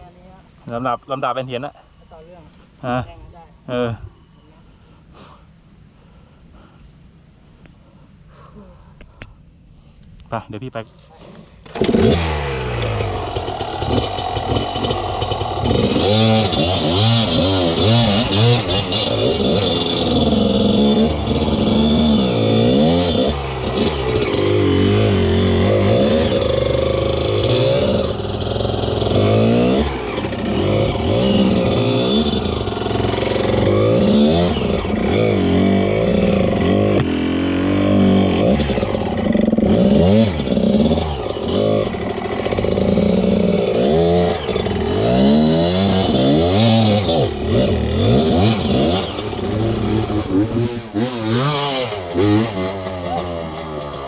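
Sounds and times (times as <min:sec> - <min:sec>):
dirt bike engine revving: 0:11.6 - 0:54.0.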